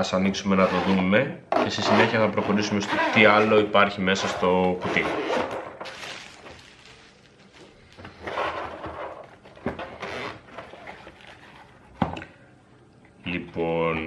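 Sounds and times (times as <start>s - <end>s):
case rustling and scraping: 7.5s - 12.0s.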